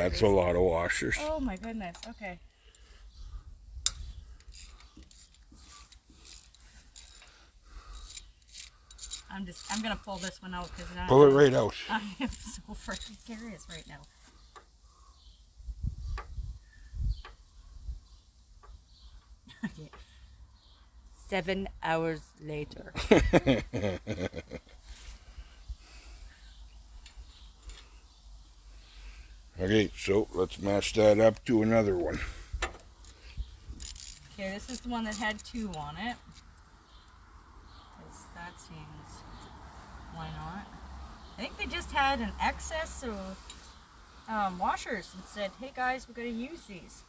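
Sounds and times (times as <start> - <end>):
hand tools clicking on metal: 3.8 - 14.1, 30.9 - 37.2.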